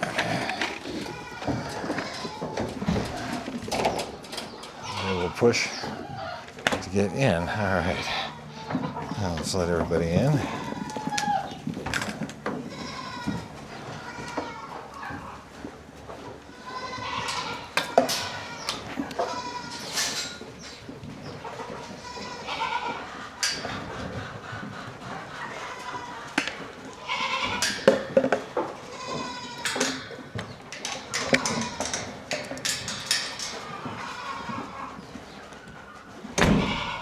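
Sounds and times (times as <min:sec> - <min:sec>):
knocks and clatters: 0:00.0 - 0:06.0, 0:08.7 - 0:13.4, 0:17.2 - 0:20.4, 0:27.5 - 0:34.6
goats bleating: 0:00.0 - 0:35.7, 0:36.4 - 0:37.0.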